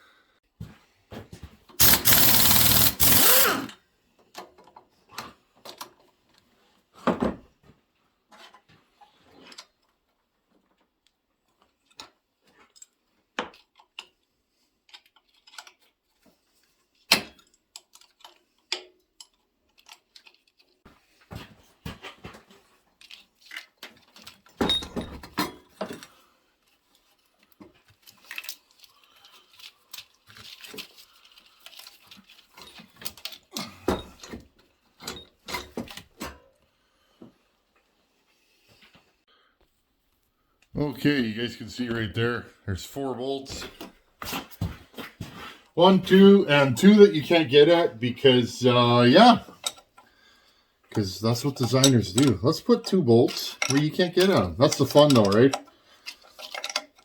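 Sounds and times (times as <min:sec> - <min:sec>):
metallic clicks of wrenches: 0:01.8 - 0:03.8, 0:51.4 - 0:57.0.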